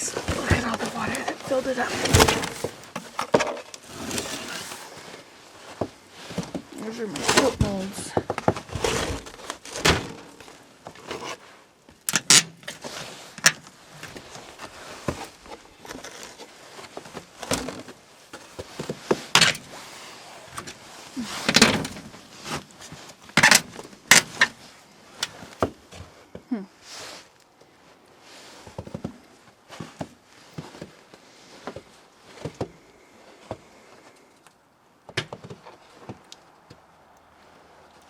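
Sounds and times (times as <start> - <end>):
objects knocking and clunking: 0.0 - 4.8, 5.6 - 11.2, 20.5 - 22.7, 35.0 - 36.8
rustling: 0.0 - 34.6.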